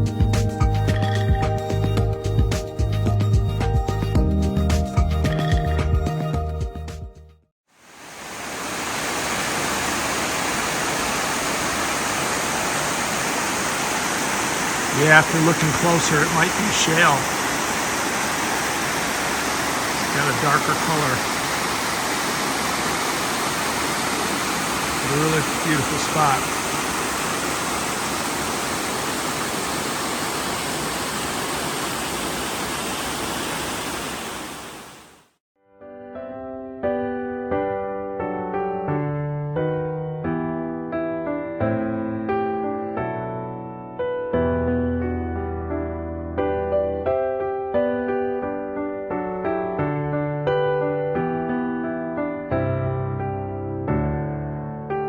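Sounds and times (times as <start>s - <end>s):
small waterfall rushing: 7.7s - 35.3s.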